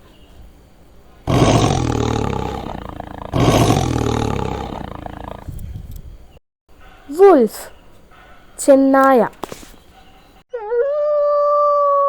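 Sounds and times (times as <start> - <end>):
tiger roaring: 1.3 - 5.6.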